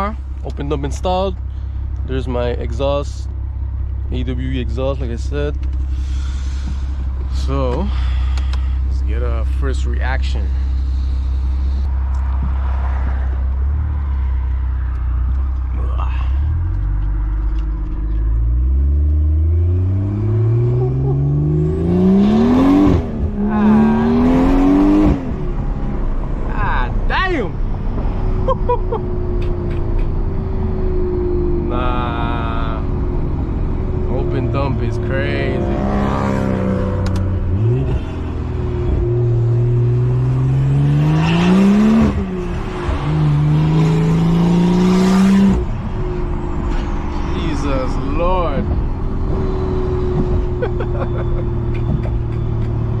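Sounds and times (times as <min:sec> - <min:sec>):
car engine accelerating hard: 0:04.4 - 0:27.1, 0:27.8 - 0:53.0.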